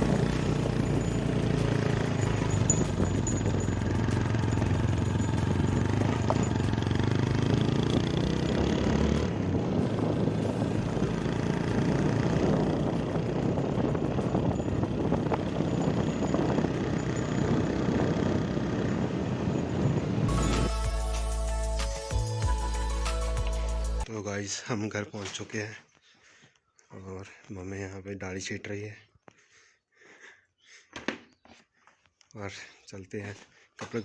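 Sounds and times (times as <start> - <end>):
motorcycle engine running: 0.0 - 20.7
wind and road noise: 0.0 - 20.8.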